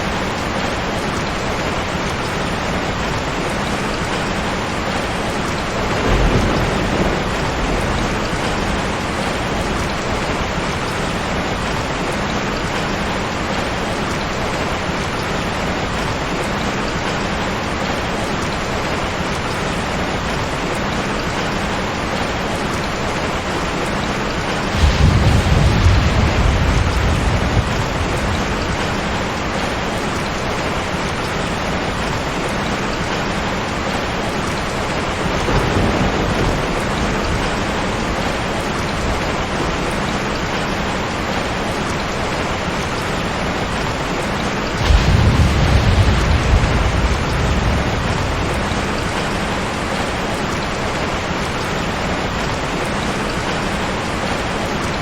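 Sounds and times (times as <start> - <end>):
heavy rain hissing: 0.0 - 55.0
thunder rumbling: 4.9 - 12.8, 23.2 - 30.5, 33.8 - 41.6, 44.6 - 51.1.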